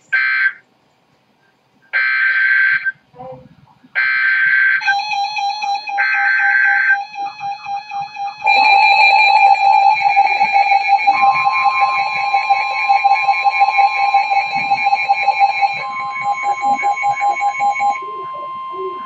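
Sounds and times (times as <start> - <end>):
pulsing electronic alarm tones: 4.0 - 19.0.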